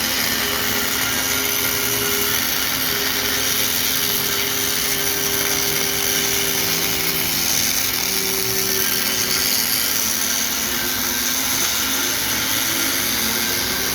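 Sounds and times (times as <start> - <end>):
welding arc crackling hiss: 0.0 - 13.9.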